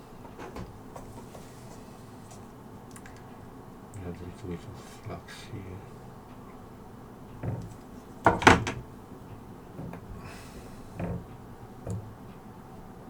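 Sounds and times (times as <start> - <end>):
tools knocking on bench: 7.4 - 8.9.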